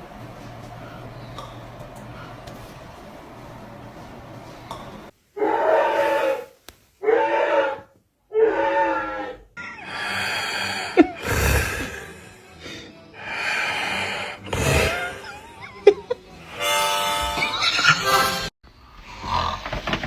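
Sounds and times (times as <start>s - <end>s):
person snoring loudly: 9.8s - 15.5s.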